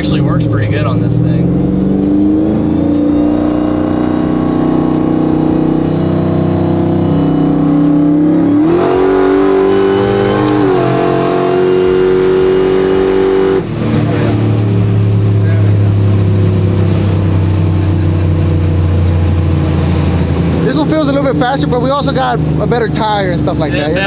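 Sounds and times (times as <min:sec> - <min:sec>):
pickup truck engine running: 0:11.2 - 0:24.0.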